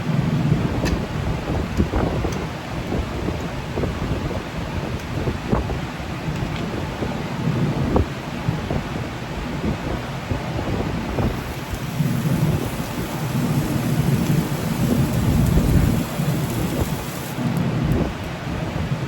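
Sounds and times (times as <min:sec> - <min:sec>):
gas burner roaring: 0:10.8 - 0:19.0.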